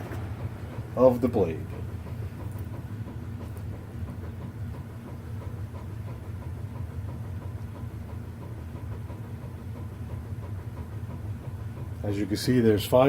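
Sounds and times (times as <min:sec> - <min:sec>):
box fan coasting down: 0:00.0 - 0:06.5.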